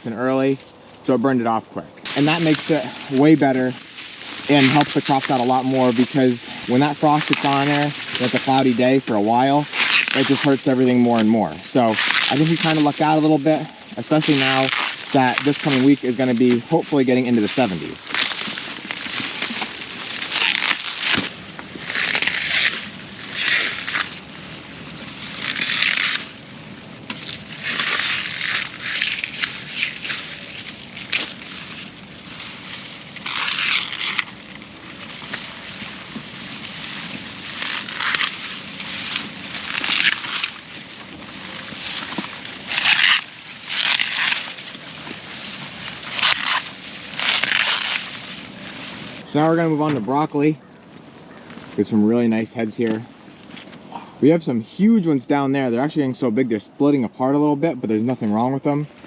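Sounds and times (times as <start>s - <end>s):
crunching and rustling: 0.1s - 56.1s.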